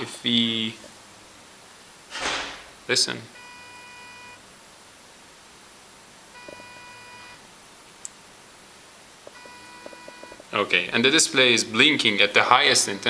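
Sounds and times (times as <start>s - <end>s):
faint electronic buzzer beeping: 3.3s - 4.4s, 6.3s - 7.4s, 9.3s - 10.5s.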